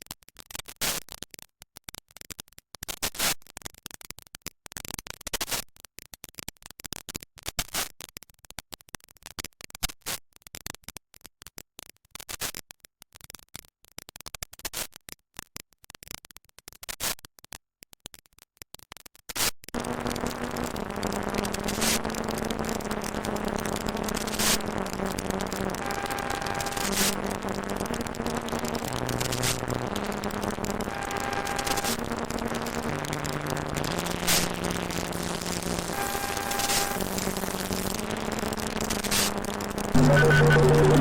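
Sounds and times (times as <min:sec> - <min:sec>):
low held tones: 0:19.8 - 0:34.2, 0:39.9 - 0:41.0
dense crackling clicks: 0:19.8 - 0:41.0.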